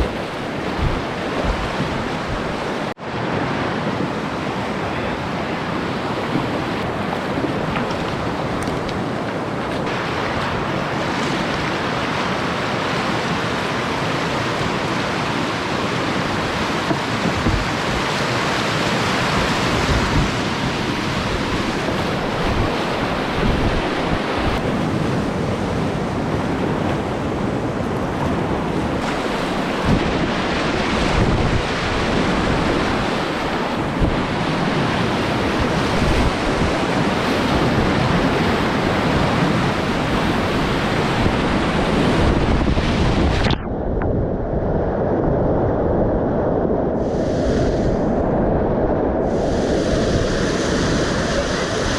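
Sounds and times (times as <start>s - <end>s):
water splashes: 0.0s - 3.0s, 5.7s - 43.6s
wind buffeting microphone: 0.0s - 3.0s, 3.8s - 51.9s
whitewater rushing: 0.0s - 43.5s, 49.2s - 51.9s.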